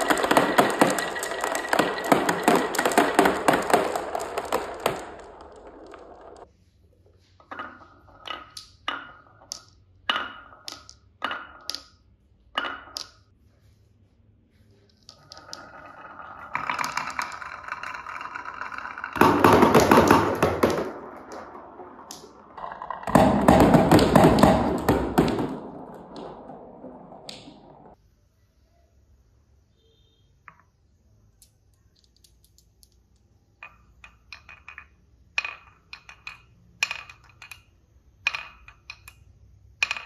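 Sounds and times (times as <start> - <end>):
marbles clacking on wooden track: 0.0 - 6.5, 7.4 - 13.3, 14.9 - 28.0, 31.4 - 40.0
marbles rolling rattle: 0.0 - 6.5, 14.9 - 28.0, 31.9 - 40.0.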